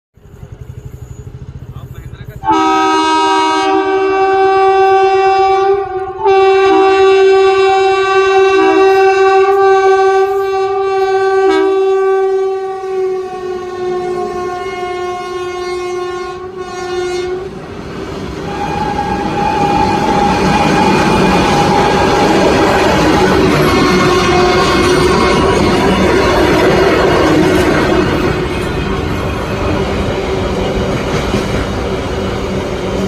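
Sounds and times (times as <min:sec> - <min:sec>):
locomotive horn blast: 0:02.4 - 0:30.2
train wheels clattering on rails: 0:17.5 - 0:33.0.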